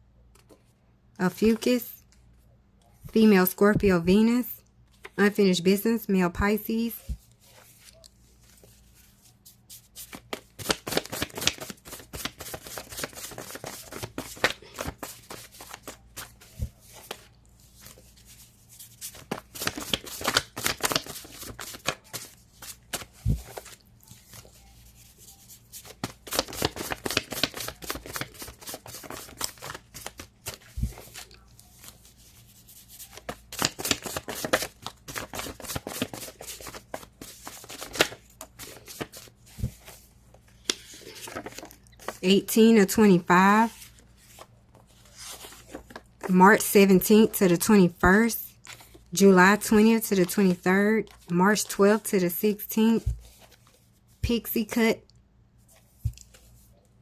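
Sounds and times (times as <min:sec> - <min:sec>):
cards being shuffled: 0:07.1 - 0:42.2, 0:43.7 - 0:46.3.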